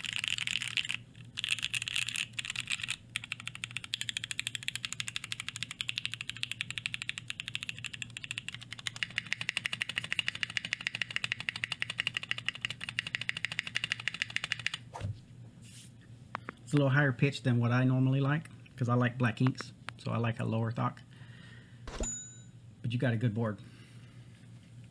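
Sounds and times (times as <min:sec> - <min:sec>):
mechanical keyboard typing: 0:00.0 - 0:14.8.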